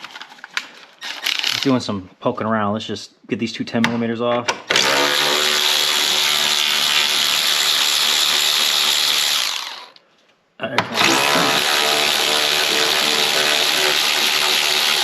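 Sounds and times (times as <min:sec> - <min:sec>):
power tool spinning bolt: 0:01.0 - 0:01.8, 0:04.7 - 0:10.0, 0:10.9 - 0:15.0.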